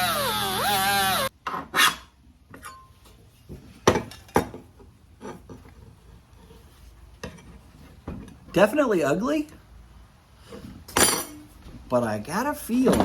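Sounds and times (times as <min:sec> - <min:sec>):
power tool whirring: 0:00.0 - 0:01.3.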